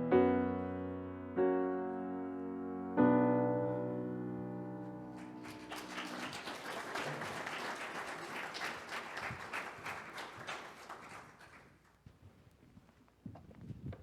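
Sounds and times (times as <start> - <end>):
piano chord: 0.0 - 5.7
crowd applauding: 5.1 - 12.0.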